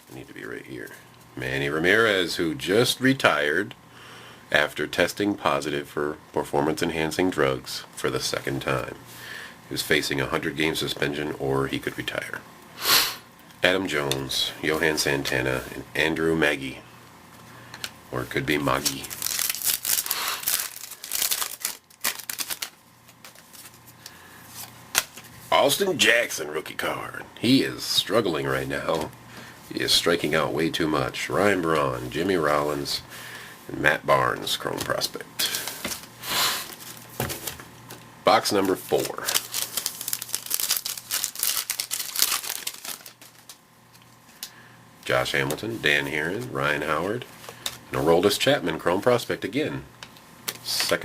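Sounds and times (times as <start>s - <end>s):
plastic wrapper rustling and tearing: 18.5s - 25.3s, 35.4s - 44.5s.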